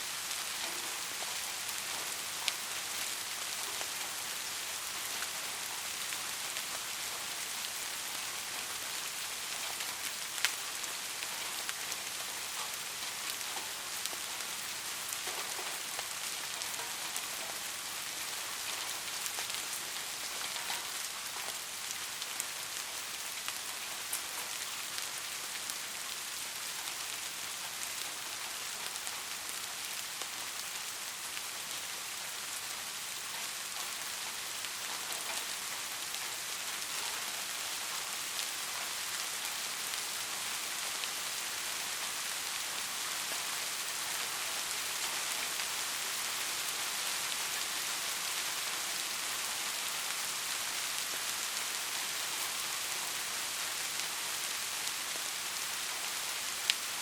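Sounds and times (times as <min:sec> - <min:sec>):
soft rain hissing: 0:00.0 - 0:57.0
raindrop ticks: 0:00.3 - 0:04.1, 0:09.5 - 0:21.6, 0:33.2 - 0:42.2.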